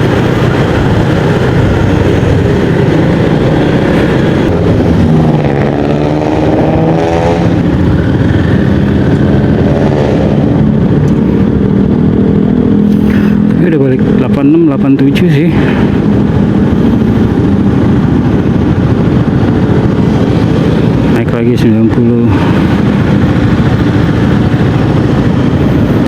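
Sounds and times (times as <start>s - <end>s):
scooter engine running: 0.0s - 13.6s
wind and road noise: 0.0s - 26.0s.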